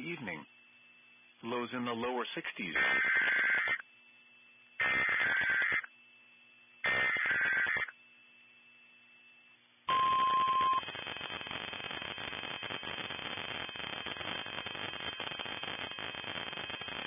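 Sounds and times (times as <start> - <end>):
steady alarm tone: 0.0 - 3.9, 4.6 - 16.9
two-tone warbling data bursts: 2.6 - 3.8, 4.8 - 5.9, 6.8 - 8.0
loud hiss: 4.8 - 5.9, 6.8 - 7.9.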